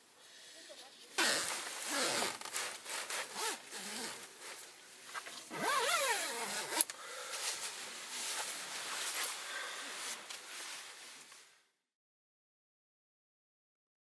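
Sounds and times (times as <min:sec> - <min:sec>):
zipper being pulled: 0:01.2 - 0:04.6, 0:05.5 - 0:06.9
fabric rustling: 0:01.2 - 0:11.7
zipper click: 0:05.5 - 0:06.9.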